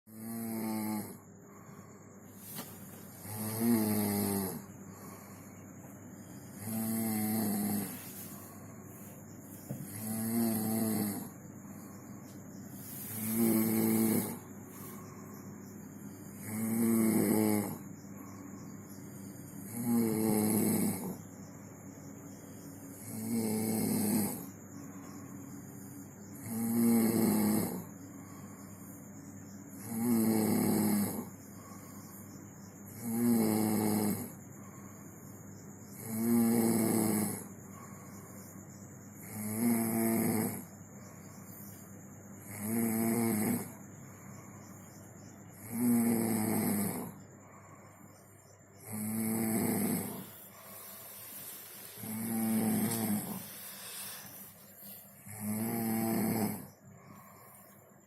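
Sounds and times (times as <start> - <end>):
person snoring: 0.1 - 5.6, 6.3 - 8.7, 9.7 - 11.4, 12.9 - 15.2, 16.3 - 18.6, 19.2 - 21.3, 22.9 - 25.4, 26.3 - 28.9, 29.7 - 35.0, 35.9 - 38.2, 39.2 - 40.7, 42.4 - 44.2, 45.5 - 48.0, 48.8 - 57.8
quiet breathing: 0.1 - 58.0.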